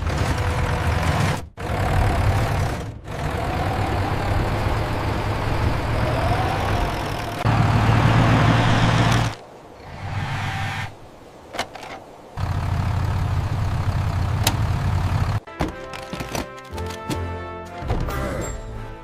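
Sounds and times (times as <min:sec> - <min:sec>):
heavy truck engine running: 0:00.0 - 0:09.4, 0:12.4 - 0:15.6.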